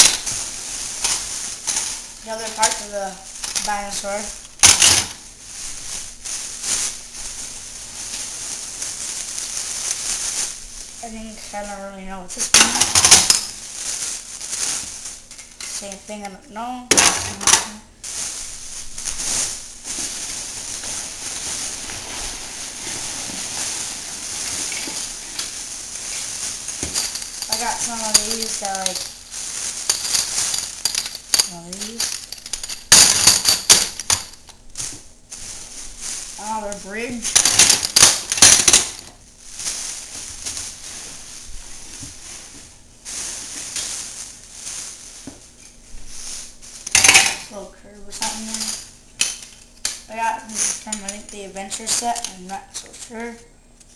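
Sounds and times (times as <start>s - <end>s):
packaging rustling: 0.0s - 11.0s, 12.6s - 16.0s, 18.0s - 47.0s
plastic pieces clicking: 37.4s - 39.1s.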